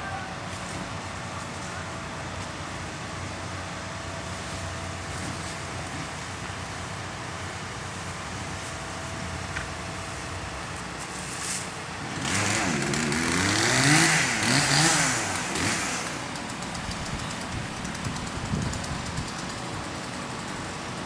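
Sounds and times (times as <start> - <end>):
engine revving: 12.0 - 19.6.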